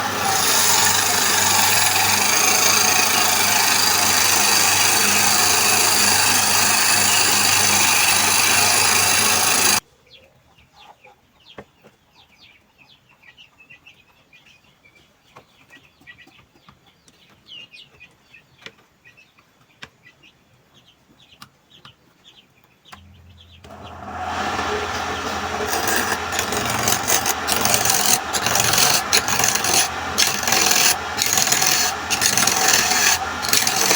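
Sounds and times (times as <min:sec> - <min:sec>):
cutting tool scraping spinning wood: 0:00.0 - 0:09.8, 0:23.4 - 0:33.9
low motor hum: 0:23.0 - 0:33.9.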